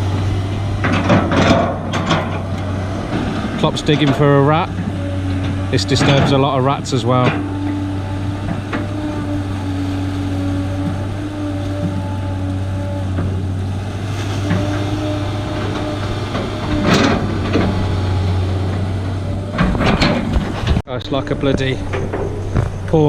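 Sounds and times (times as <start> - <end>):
excavator engine humming: 0.0 - 23.0
noisy rushes: 0.0 - 23.0.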